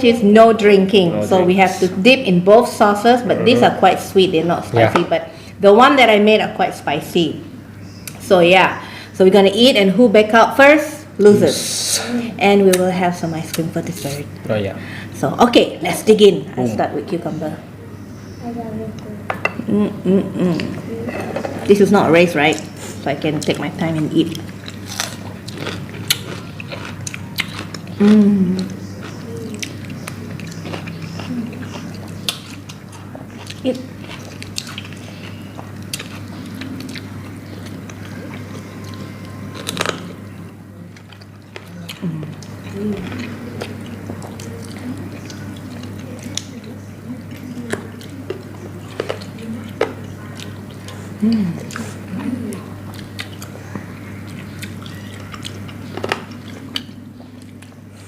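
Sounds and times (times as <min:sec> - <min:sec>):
person humming: 0:03.2 - 0:04.0, 0:04.7 - 0:05.0, 0:11.2 - 0:12.3, 0:19.6 - 0:20.8, 0:28.0 - 0:29.6, 0:41.8 - 0:43.1, 0:51.2 - 0:52.6
chewing and biting: 0:24.3 - 0:40.2, 0:47.3 - 0:58.0.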